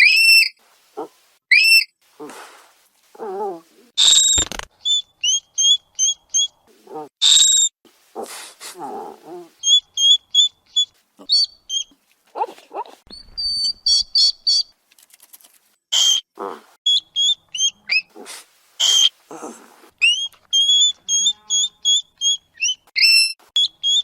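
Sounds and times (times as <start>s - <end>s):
hedgehog squeaks and chirps: 0.0s - 2.0s, 4.0s - 6.6s, 7.2s - 8.3s, 9.2s - 14.7s, 15.9s - 24.0s
hedgehog breathy huffs: 2.2s - 4.0s, 8.1s - 9.6s, 18.1s - 20.2s.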